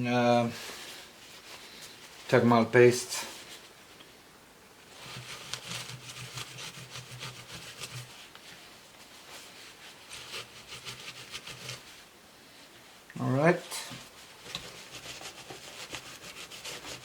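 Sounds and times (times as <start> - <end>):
rapid rubbing strokes: 4.9 - 12.0, 14.0 - 17.0.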